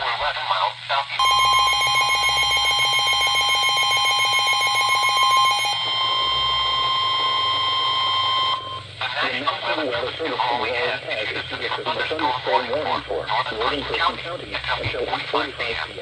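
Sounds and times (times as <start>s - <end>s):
fast pulsing alarm beep: 1.2s - 8.9s
steady high alarm tone: 1.2s - 9.1s.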